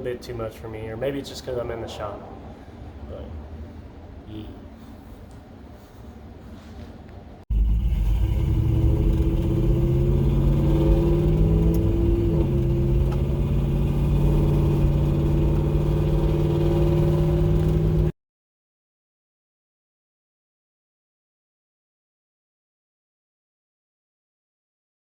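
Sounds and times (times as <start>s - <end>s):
car engine idling: 7.5s - 18.1s.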